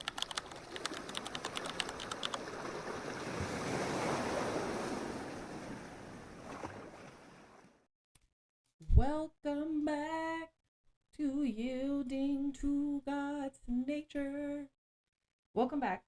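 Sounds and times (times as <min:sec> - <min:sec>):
sharp clicks: 0:00.0 - 0:02.4
ocean waves washing in: 0:00.0 - 0:07.8.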